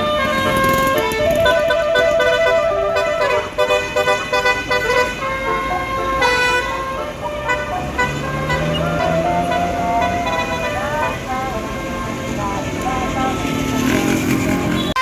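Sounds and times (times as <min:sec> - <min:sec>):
bus air horns playing a tune: 0:00.0 - 0:15.0.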